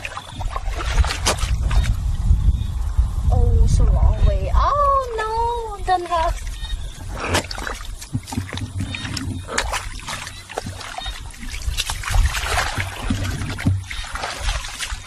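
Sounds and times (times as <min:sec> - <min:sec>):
water splashing and sloshing: 0:00.0 - 0:02.7, 0:03.7 - 0:15.0
low rumble: 0:01.4 - 0:05.7.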